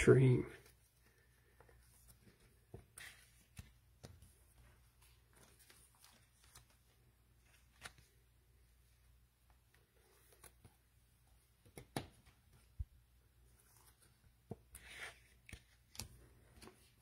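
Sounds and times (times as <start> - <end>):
trading cards and wrappers rustling: 0.1 - 9.1, 9.8 - 17.0.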